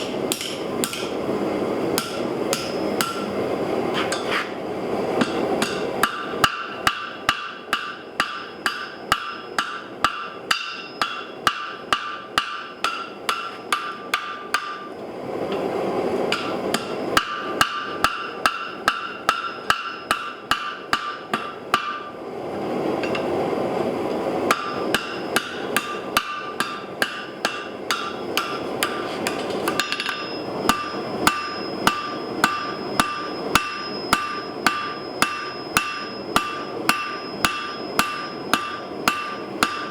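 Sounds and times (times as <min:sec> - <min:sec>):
hammer striking ringing anvil: 0:05.2 - 0:14.9, 0:16.4 - 0:22.1, 0:24.5 - 0:39.9.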